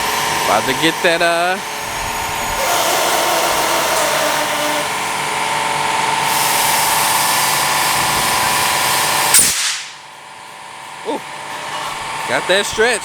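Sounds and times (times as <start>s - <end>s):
compressed air rushing into tire: 6.2s - 10.0s.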